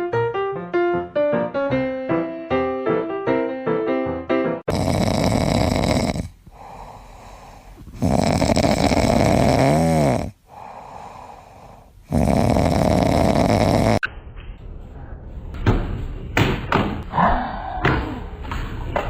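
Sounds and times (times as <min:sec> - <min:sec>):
pet snoring: 0:04.7 - 0:14.0
quiet breaths: 0:04.7 - 0:14.0.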